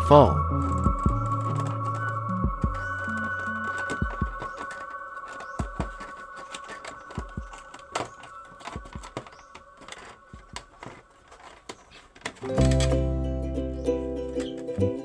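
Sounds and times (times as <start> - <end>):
faint steady background tones: 0.0 - 15.0
plastic parts clicking and knocking: 0.7 - 13.0.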